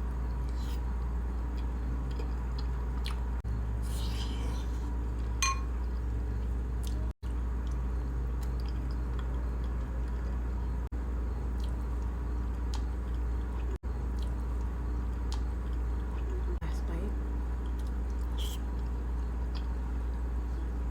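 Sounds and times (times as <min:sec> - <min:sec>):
steady low hum: 0:00.0 - 0:20.9
wet chewing sounds: 0:01.4 - 0:05.3, 0:06.4 - 0:10.5, 0:11.4 - 0:16.6, 0:17.6 - 0:19.8
sharp ringing clink: 0:05.4 - 0:05.7.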